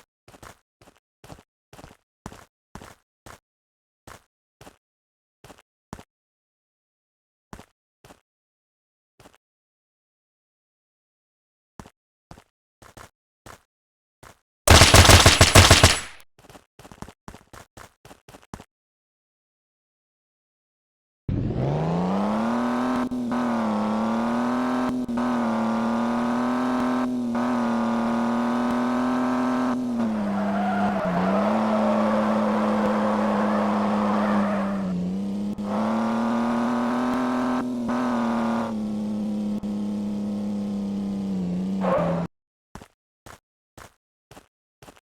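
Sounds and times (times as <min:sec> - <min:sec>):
tornado siren wailing: 0:30.1 - 0:35.0.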